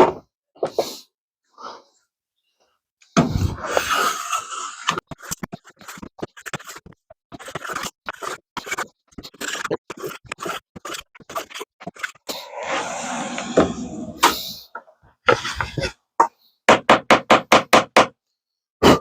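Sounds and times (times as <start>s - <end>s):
sandpaper scraping wood: 3.4s - 14.1s.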